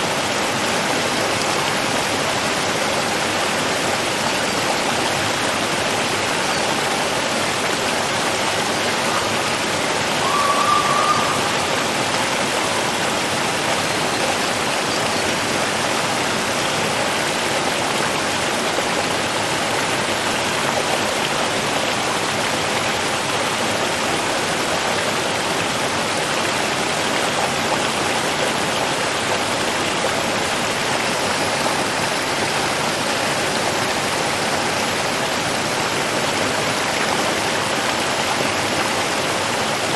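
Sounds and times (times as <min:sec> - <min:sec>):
running water rushing: 0:00.0 - 0:39.9
brief higher tone: 0:10.2 - 0:13.6.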